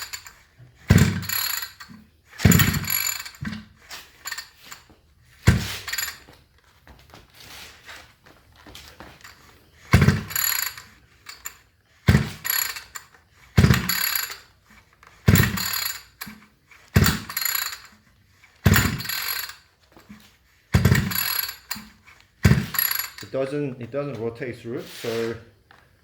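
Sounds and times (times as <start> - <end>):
recoil pull-starter rasping: 0.0 - 6.3, 9.2 - 23.6.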